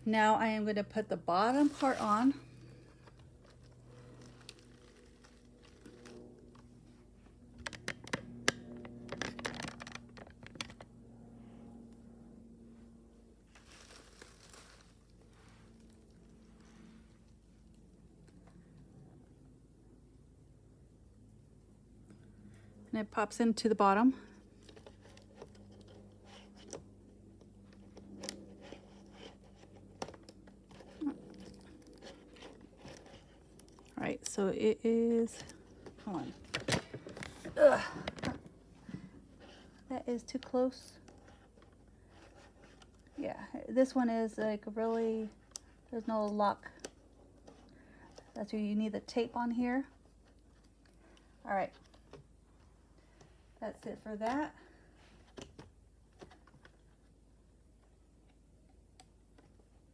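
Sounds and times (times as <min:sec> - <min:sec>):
faint steady hum: 0:00.0 - 0:59.9
plastic parts being handled: 0:07.6 - 0:10.9
plastic parts clicking and crunching: 0:07.6 - 0:10.9, 0:35.2 - 0:38.5.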